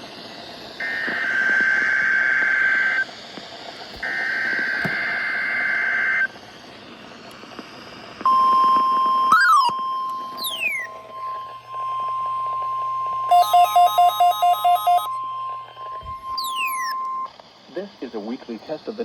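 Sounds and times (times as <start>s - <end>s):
steady warning alarm tone: 8.3s - 17.4s
warbling digital bursts: 10.3s - 11.6s, 13.3s - 17.3s.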